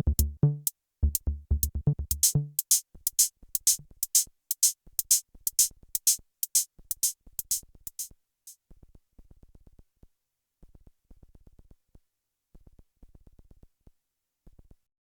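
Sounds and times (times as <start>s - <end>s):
drum machine hi-hat and cymbal hits: 0.0s - 8.1s.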